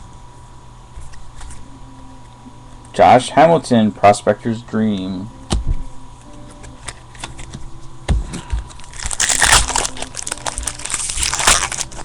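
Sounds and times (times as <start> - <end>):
foil wrapper crinkling and tearing: 8.7 - 12.0.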